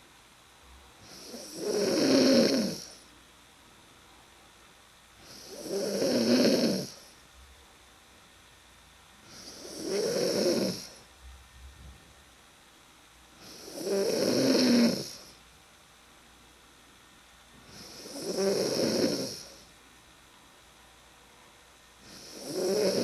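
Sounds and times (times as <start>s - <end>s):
person snoring: 1.0s - 3.0s, 5.2s - 7.1s, 9.2s - 11.0s, 13.4s - 15.4s, 17.6s - 19.7s, 22.0s - 23.0s.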